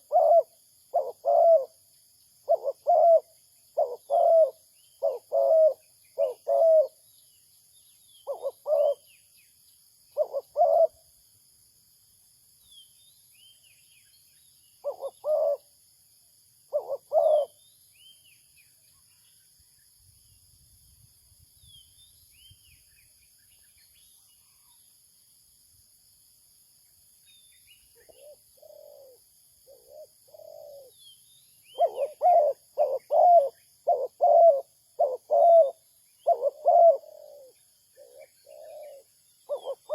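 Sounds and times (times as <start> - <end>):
dove cooing: 0.0 - 1.8, 2.4 - 7.0, 8.2 - 9.1, 10.2 - 11.0, 14.8 - 15.7, 16.7 - 17.6, 28.0 - 31.0, 31.7 - 39.9
small birds chirping: 0.0 - 11.2, 27.0 - 39.9.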